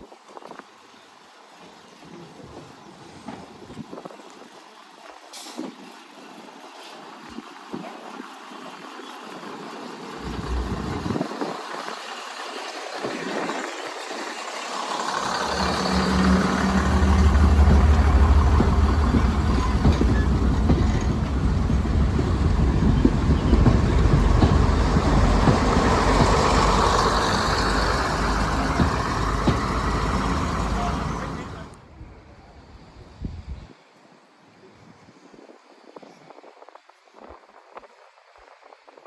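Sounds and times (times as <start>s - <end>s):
train rumbling and rushing: 9.2s - 32.0s.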